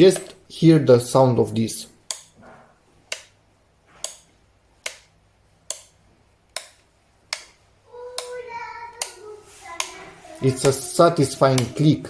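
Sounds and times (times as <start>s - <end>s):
rocker switch clicks: 2.0s - 2.4s, 3.1s - 3.4s, 4.0s - 7.6s, 8.2s - 9.2s
high-pitched voice: 7.9s - 12.0s.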